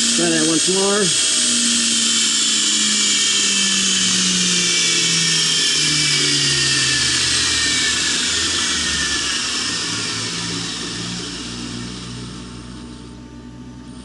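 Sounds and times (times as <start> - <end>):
motor whining: 0.0 - 14.0.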